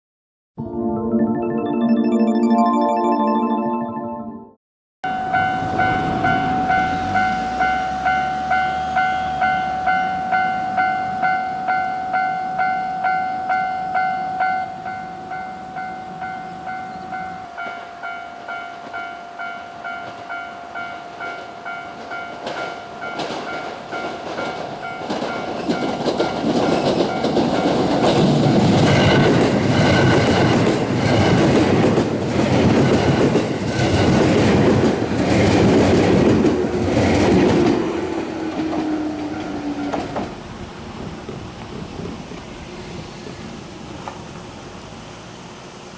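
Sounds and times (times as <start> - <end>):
level crossing bell ringing: 0.6 - 4.5, 5.1 - 18.6
train wheels clacking over joints: 22.0 - 42.6.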